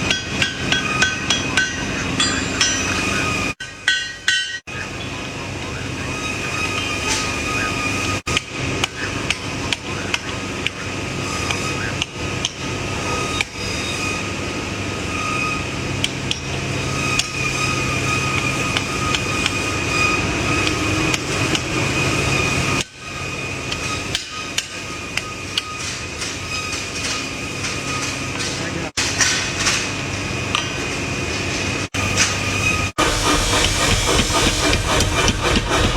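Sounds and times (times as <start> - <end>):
hammer striking steel on anvil: 0.0 - 4.8.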